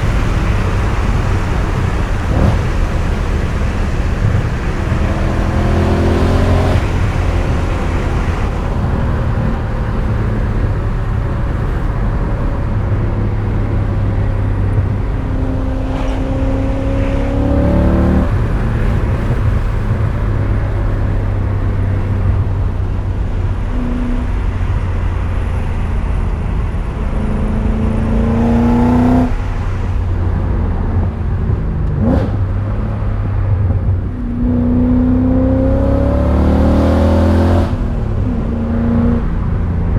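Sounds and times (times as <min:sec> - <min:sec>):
car engine accelerating: 0:00.0 - 0:39.9
low road rumble: 0:00.0 - 0:39.9.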